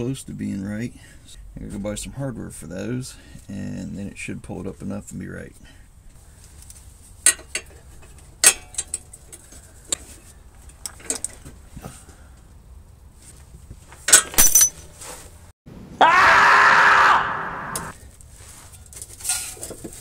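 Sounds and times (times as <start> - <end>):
metal tools clinking: 7.2 - 11.4, 14.1 - 15.0.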